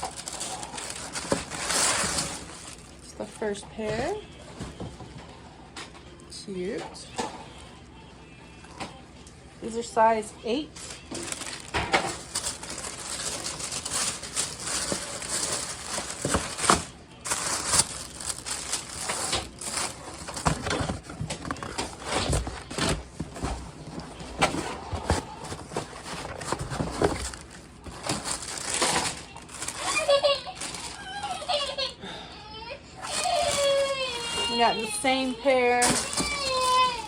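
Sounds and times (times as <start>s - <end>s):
paper and cardboard rustling: 0.0s - 3.2s, 10.5s - 31.7s, 33.0s - 37.0s.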